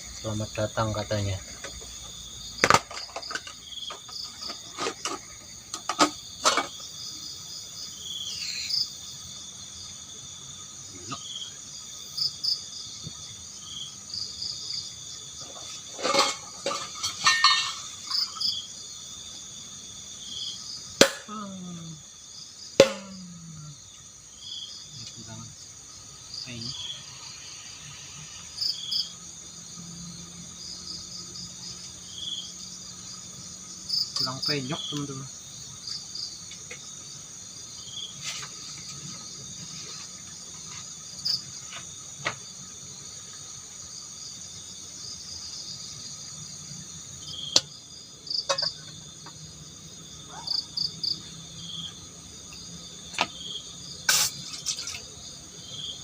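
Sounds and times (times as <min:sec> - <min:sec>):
crickets and insects chirping: 0:00.0 - 0:56.0.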